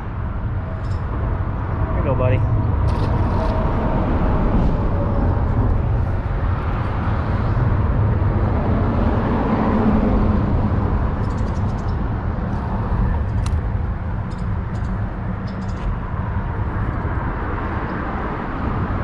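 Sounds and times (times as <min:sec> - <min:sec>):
highway traffic rumble: 0:00.0 - 0:19.0.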